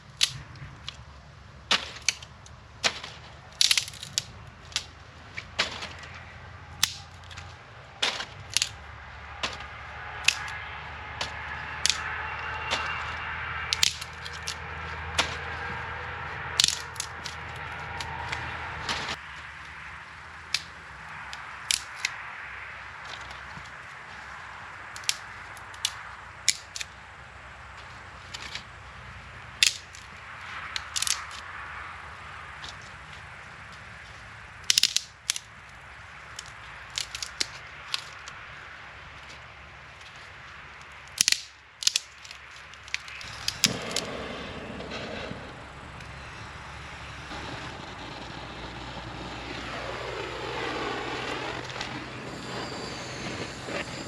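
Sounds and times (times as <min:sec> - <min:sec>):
fire crackling pops: 0:00.0 - 0:27.0, 0:40.3 - 0:54.0
distant motor passing by: 0:04.4 - 0:21.3, 0:43.1 - 0:54.0
bonfire hissing: 0:42.9 - 0:54.0.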